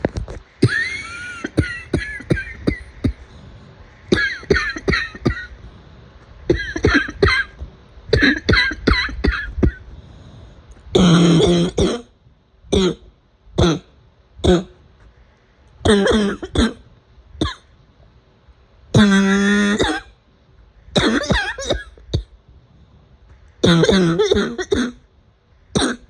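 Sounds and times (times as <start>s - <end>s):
person coughing: 0.6s - 3.4s, 4.1s - 5.6s, 6.5s - 9.9s, 11.0s - 12.1s, 12.7s - 13.0s, 13.6s - 14.8s, 15.9s - 16.8s, 17.4s - 17.7s, 19.0s - 20.2s, 21.0s - 22.4s, 23.6s - 25.0s, 25.8s - 26.0s.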